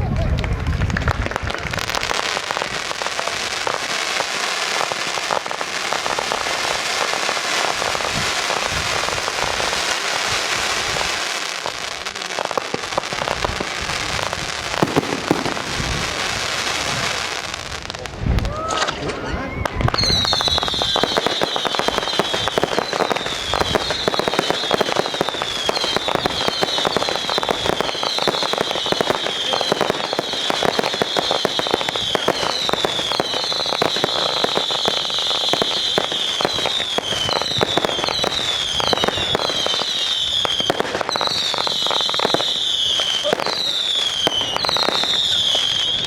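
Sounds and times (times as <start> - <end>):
fireworks crackling and popping: 0.0 - 46.0
falling firework whistles: 14.7 - 16.3, 18.5 - 46.0.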